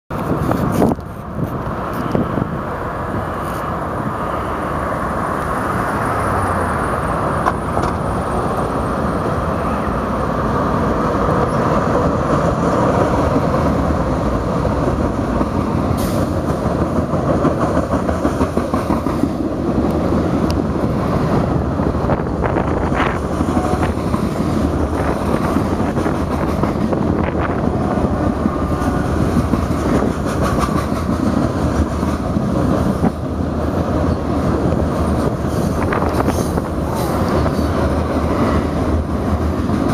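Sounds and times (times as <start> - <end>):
diesel locomotive engine noise: 0.1 - 39.9
steel wheels on rails: 10.1 - 39.9.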